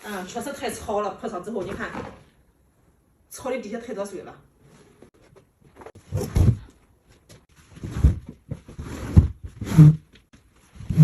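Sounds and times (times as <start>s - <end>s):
vinyl flooring scraping and rustling: 4.7s - 11.0s.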